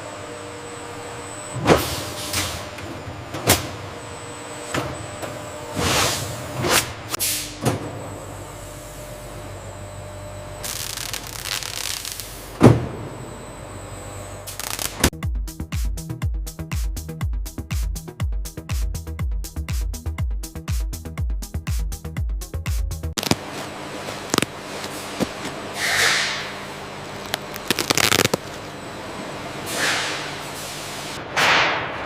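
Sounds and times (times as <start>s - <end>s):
machinery humming: 23.2s - 31.0s.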